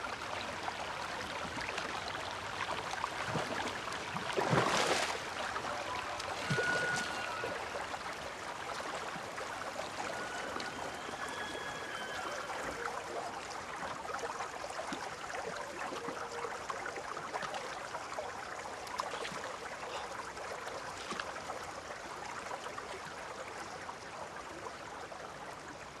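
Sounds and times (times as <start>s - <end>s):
river water flowing: 0.0s - 26.0s
short whistle-like tones: 5.7s - 7.8s, 9.8s - 12.9s.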